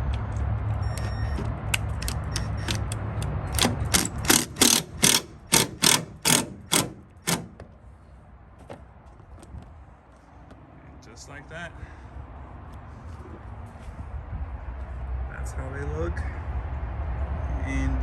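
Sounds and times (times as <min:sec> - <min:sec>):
hand ratchet clicking: 0:01.8 - 0:07.6.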